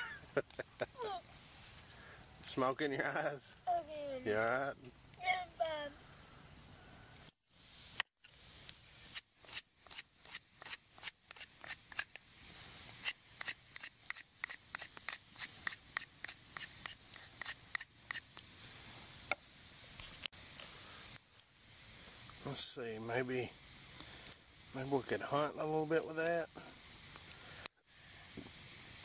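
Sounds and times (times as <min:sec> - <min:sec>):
campfire crackling and popping: 0:00.0 - 0:05.5, 0:06.3 - 0:29.0.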